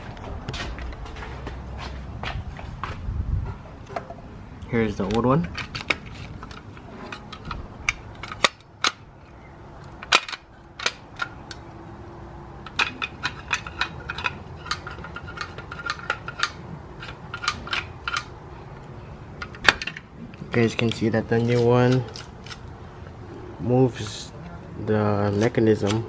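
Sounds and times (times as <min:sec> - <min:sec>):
door lock parts clicking: 0:04.9 - 0:11.7, 0:12.6 - 0:22.8.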